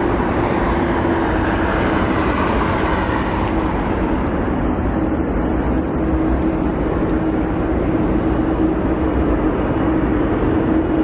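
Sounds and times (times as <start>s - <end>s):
jet engines at takeoff: 0.0s - 11.0s.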